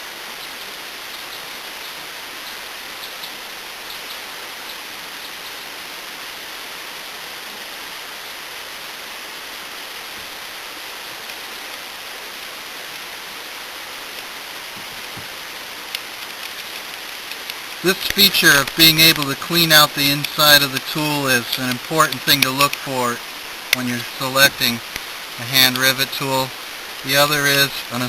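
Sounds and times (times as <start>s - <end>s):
steady background hiss: 0.0s - 28.0s
faint light clicks: 15.9s - 19.3s.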